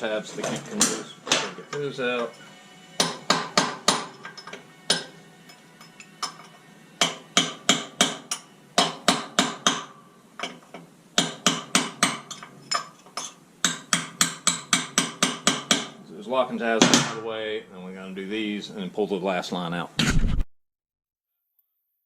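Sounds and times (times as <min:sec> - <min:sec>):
hammer striking metal: 0:00.5 - 0:10.6, 0:11.2 - 0:12.9, 0:13.6 - 0:16.0, 0:16.8 - 0:17.3.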